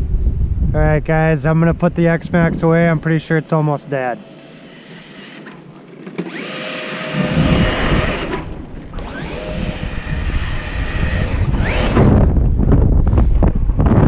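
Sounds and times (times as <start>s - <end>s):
wind buffeting microphone: 0.0s - 4.4s, 6.3s - 14.0s
rc truck motor whining: 4.1s - 12.5s.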